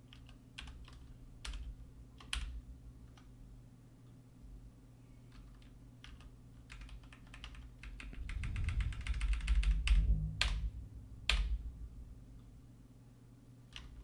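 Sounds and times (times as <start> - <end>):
typing on computer keyboard: 0.0 - 3.3, 5.3 - 10.6, 13.7 - 14.0.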